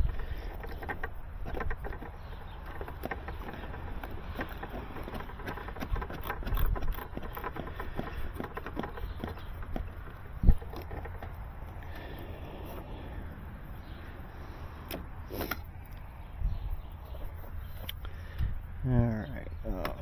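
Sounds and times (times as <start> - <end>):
cable handling clicks and rustling: 0.0 - 14.0, 14.7 - 16.1
steady low rumble: 7.8 - 20.0.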